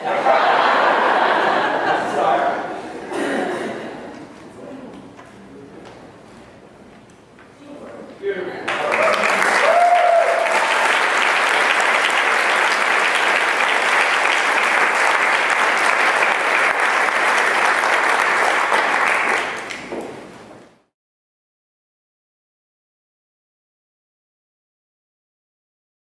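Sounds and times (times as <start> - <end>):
congregation applauding: 8.6 - 20.3.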